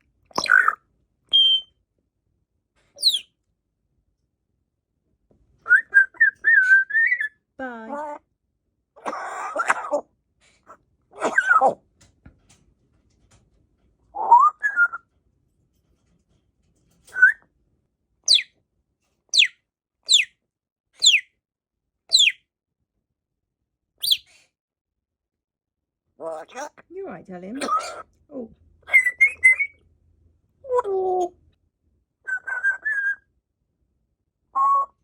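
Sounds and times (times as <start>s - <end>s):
parrot harsh calls: 0.4s - 1.7s, 3.0s - 3.2s, 9.0s - 10.0s, 21.0s - 21.2s, 24.0s - 24.4s, 26.2s - 26.8s, 27.6s - 28.1s, 28.9s - 29.7s
parrot whistling: 0.4s - 1.7s, 3.0s - 3.3s, 5.7s - 7.3s, 18.3s - 18.5s, 20.1s - 20.3s, 21.0s - 21.2s, 22.1s - 22.4s, 24.0s - 24.3s, 28.9s - 29.8s, 32.3s - 33.2s, 34.6s - 35.0s.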